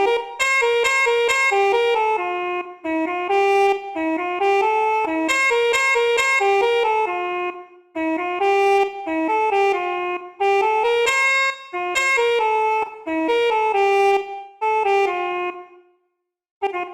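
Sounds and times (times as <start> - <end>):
bus air-horn melody: 0.0 - 15.9, 16.6 - 16.9.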